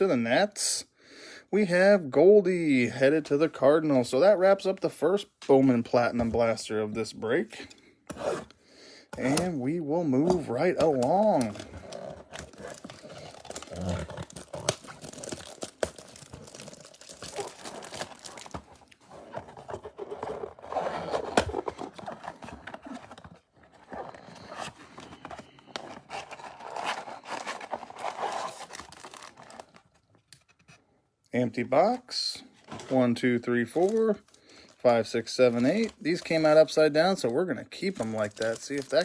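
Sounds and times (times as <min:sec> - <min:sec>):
wrapped packs rustling: 0:10.2 - 0:30.1, 0:32.6 - 0:39.0
cardboard box tearing: 0:10.3 - 0:29.8.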